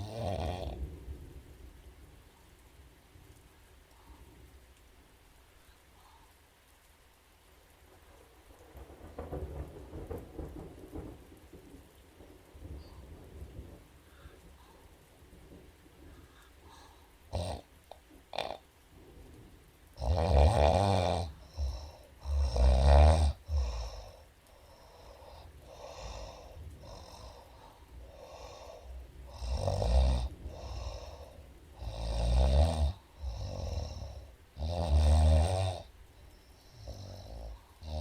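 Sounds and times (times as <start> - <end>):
woman snoring: 0.0 - 0.8, 16.8 - 17.7, 18.3 - 18.6, 20.0 - 36.0, 36.6 - 38.0.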